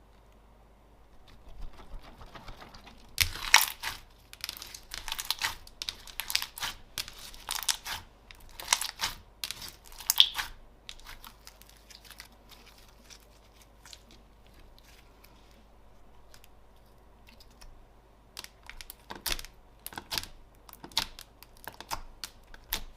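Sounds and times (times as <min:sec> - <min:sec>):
slime squishing with crackly pops: 0:02.4 - 0:13.2, 0:17.2 - 0:22.9.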